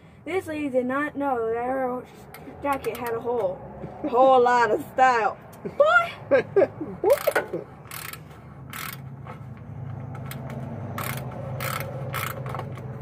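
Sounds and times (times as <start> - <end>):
socket ratchet clicking: 7.1 - 9.1, 10.0 - 13.0.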